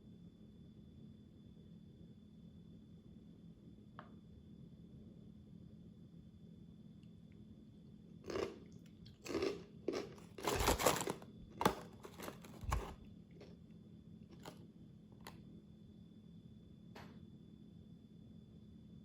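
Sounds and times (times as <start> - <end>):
chewing crunchy snack: 8.2 - 13.6, 14.3 - 14.6.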